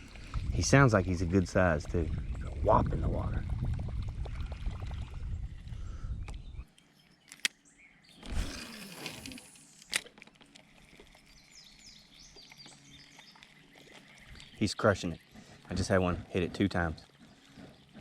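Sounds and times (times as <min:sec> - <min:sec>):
low rumble: 0:00.0 - 0:06.7
birds chirping: 0:00.0 - 0:09.9, 0:10.7 - 0:18.0
sharp clicks: 0:06.3 - 0:07.6.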